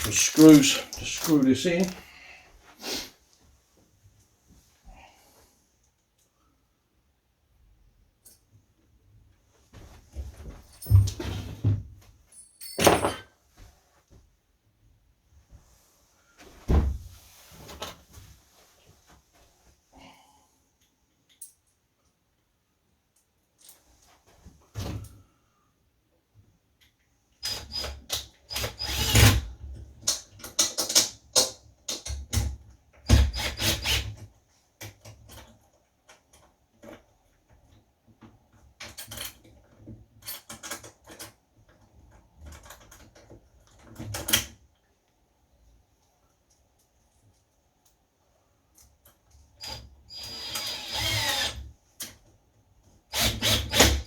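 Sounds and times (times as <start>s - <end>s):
screws driven by hand into metal: 33.1s - 34.2s, 49.6s - 51.6s, 53.2s - 54.0s.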